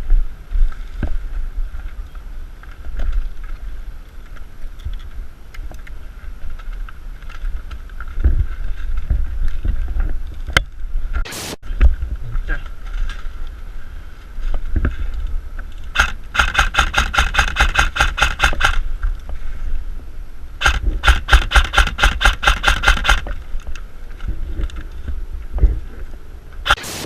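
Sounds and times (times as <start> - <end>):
wind rumble on microphone: 0.0 - 26.7
airsoft rifle rapid shots: 16.0 - 18.8, 20.6 - 23.3, 26.7 - 27.0.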